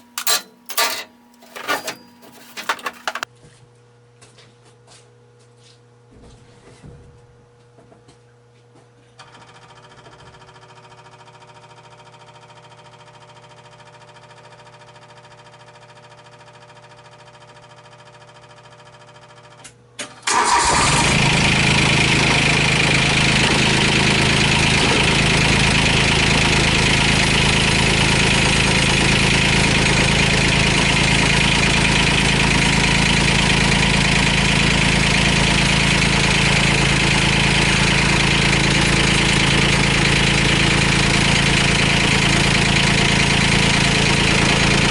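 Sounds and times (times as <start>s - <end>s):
diesel engine starting and running: 0.0s - 3.3s, 20.3s - 44.9s.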